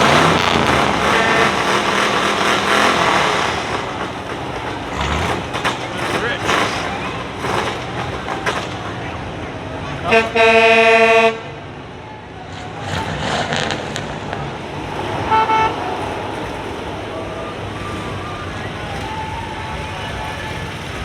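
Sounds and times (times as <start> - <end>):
road traffic: 0.0 - 21.0
vehicle horn toot: 0.1 - 2.0, 10.0 - 11.6, 15.2 - 16.1.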